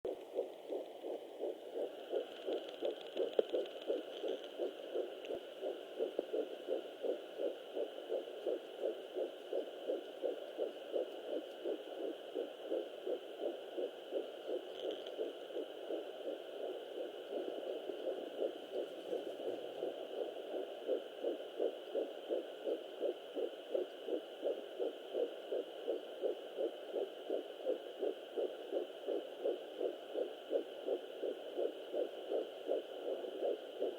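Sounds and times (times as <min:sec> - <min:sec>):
fetal heartbeat on doppler: 0:00.1 - 0:33.9.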